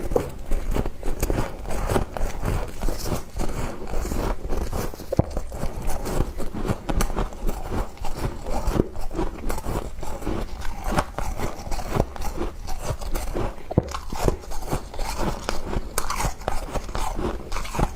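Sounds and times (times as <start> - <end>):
crunching and chewing frost: 0.0 - 17.9.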